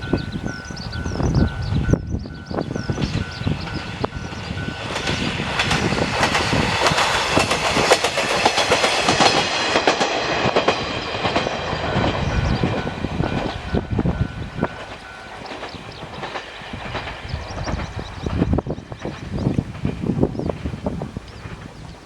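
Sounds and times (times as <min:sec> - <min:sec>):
diesel railcar passing: 0:00.0 - 0:22.0
wheels clattering over rail joints: 0:00.0 - 0:22.0.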